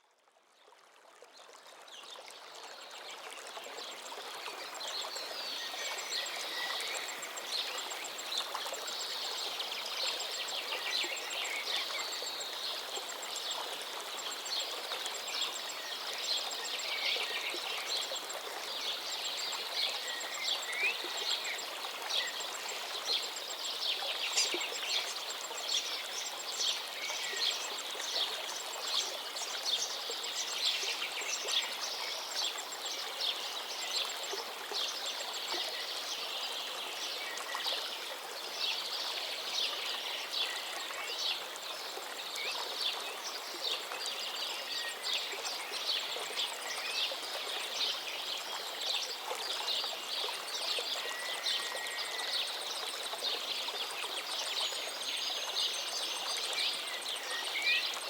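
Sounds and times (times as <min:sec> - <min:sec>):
river flowing: 0:00.0 - 0:58.0
songbirds singing: 0:18.8 - 0:34.2.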